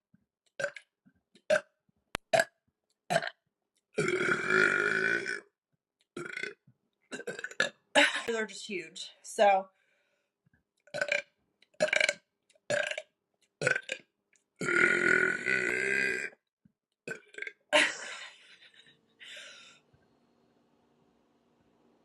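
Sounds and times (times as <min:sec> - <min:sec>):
woman burping: 0:04.0 - 0:05.5, 0:06.2 - 0:08.3, 0:14.6 - 0:16.4, 0:17.1 - 0:18.4.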